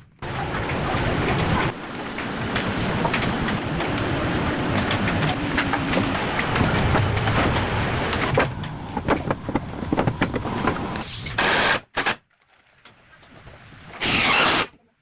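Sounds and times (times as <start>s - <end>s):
workshop clatter and knocking: 0.0s - 11.4s
loud hissing bursts: 11.0s - 11.9s.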